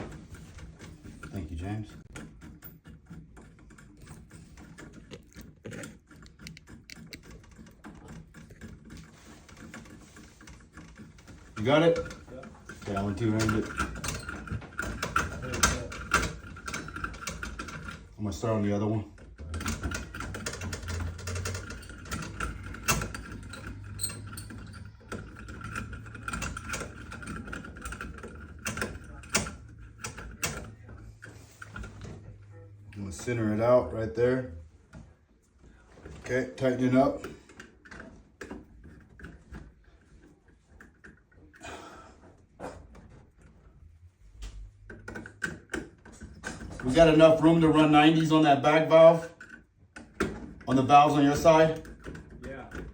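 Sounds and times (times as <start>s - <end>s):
hand tools clicking on fittings: 0.3s - 31.8s.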